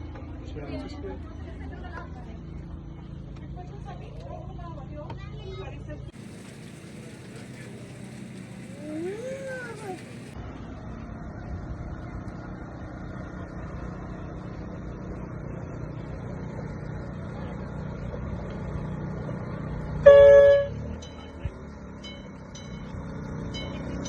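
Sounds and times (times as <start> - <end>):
train running rumble: 6.1 - 10.4
train horn blast: 20.0 - 20.9.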